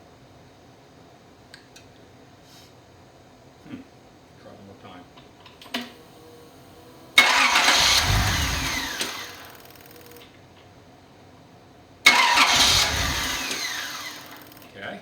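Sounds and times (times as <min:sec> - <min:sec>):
car engine starting and dying: 0:05.8 - 0:10.2, 0:12.0 - 0:14.8.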